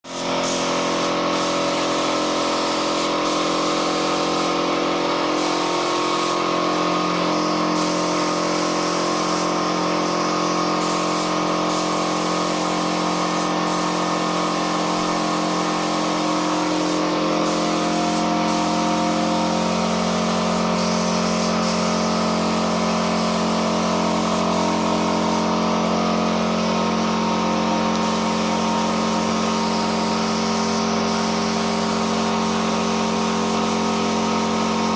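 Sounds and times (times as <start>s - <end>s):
spray gun hissing: 0.1s - 34.9s
machine hum: 3.5s - 32.9s.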